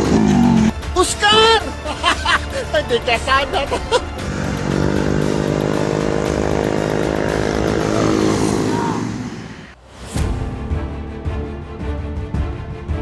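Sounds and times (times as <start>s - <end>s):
small engine buzzing at high revs: 0.0s - 0.8s, 3.2s - 9.8s.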